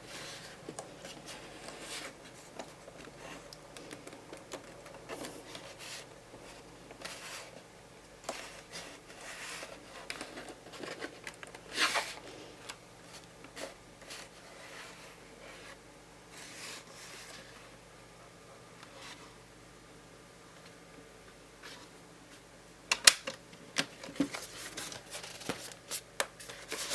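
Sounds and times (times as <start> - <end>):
hands handling laptop parts: 22.9 - 26.9.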